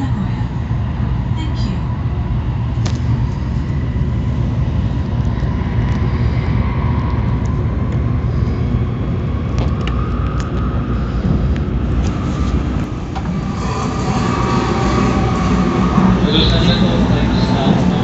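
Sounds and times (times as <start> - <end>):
faint steady whines: 0.0 - 18.0
train rumble inside passenger car: 0.0 - 18.0.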